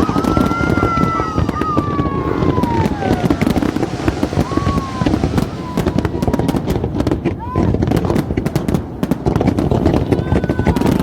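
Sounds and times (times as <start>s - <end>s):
fireworks whistles falling in pitch: 0.0s - 7.9s
crowd rumble: 0.0s - 8.4s
fireworks crackling and popping: 0.0s - 11.0s.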